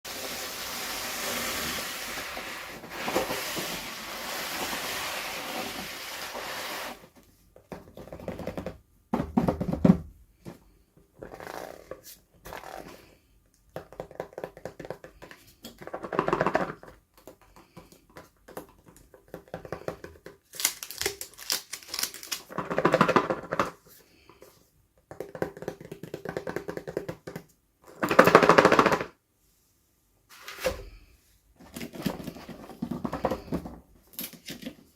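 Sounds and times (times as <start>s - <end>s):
packaging rustling and crinkling: 20.4s - 22.8s.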